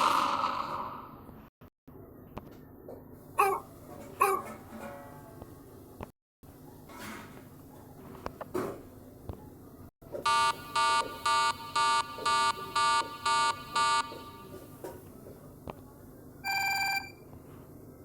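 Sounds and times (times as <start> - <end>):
short electronic beeps: 16.4 - 17.2.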